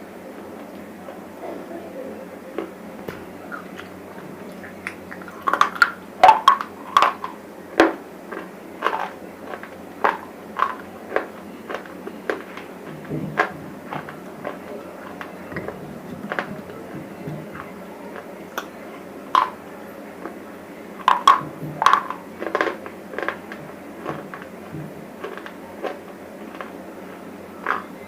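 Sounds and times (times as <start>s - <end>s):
crunching dried chips: 8.3s - 12.7s, 21.0s - 26.8s.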